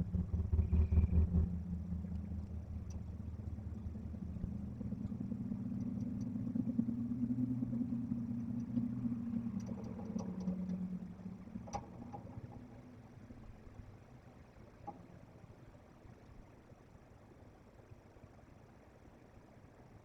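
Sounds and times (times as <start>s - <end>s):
vehicle engine droning: 0.0s - 16.2s
faint clicks: 0.4s - 13.6s, 14.7s - 15.3s.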